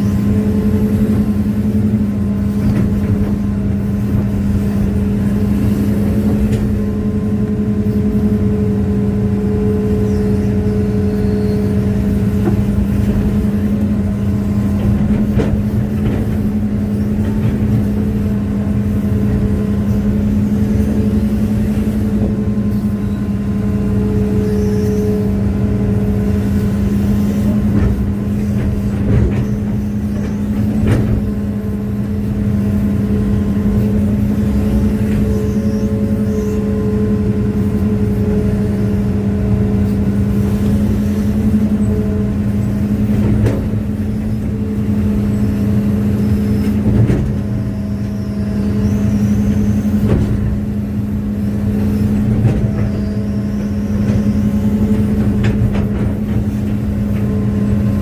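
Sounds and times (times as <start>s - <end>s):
excavator diesel engine running: 0.0s - 58.0s
hydraulic whine: 0.0s - 58.0s
knocks and clanks: 14.7s - 18.3s, 27.6s - 31.5s, 43.0s - 44.6s, 46.6s - 47.6s, 49.5s - 50.7s, 52.1s - 57.5s.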